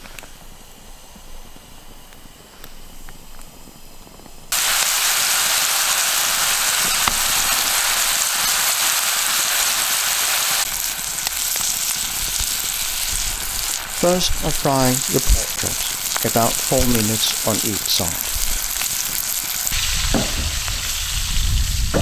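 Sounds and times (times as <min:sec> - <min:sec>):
campfire crackling: 0:00.0 - 0:22.0
meat sizzling in a pan: 0:04.5 - 0:22.0.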